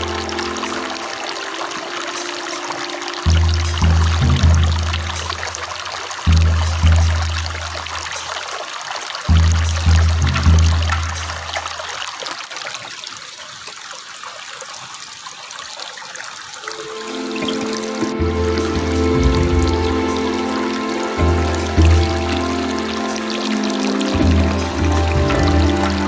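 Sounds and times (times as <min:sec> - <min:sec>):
soft background music: 0:00.0 - 0:05.9, 0:16.6 - 0:26.0
water trickling and gurgling: 0:00.0 - 0:26.0.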